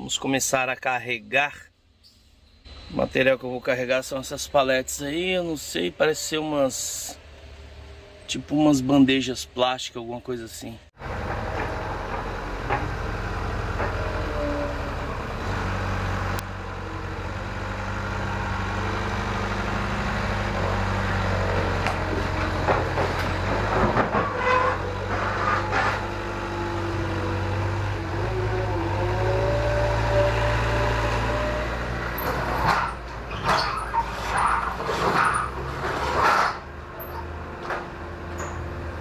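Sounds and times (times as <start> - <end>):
vehicle engine humming: 1.9 - 9.6, 10.4 - 39.0
knocks and rattles: 11.0 - 14.7, 20.4 - 26.3, 32.1 - 38.8.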